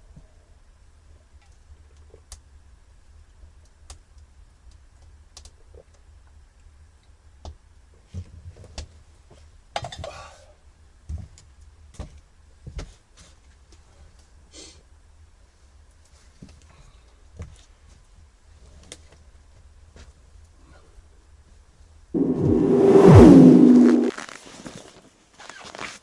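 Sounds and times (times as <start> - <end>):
low steady rumble: 22.2 - 24.1.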